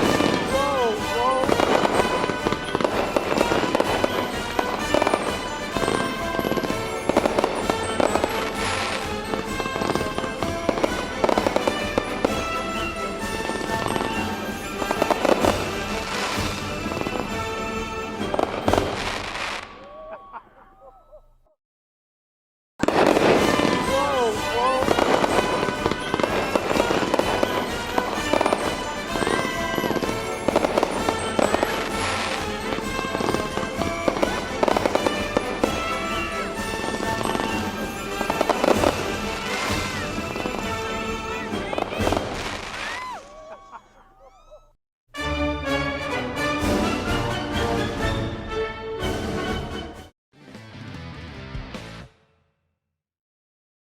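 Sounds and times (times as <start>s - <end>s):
fireworks popping and crackling: 0.0s - 19.8s, 22.8s - 43.2s
music: 0.0s - 19.8s, 22.8s - 43.1s, 45.1s - 52.7s
firework whistling: 22.8s - 43.8s.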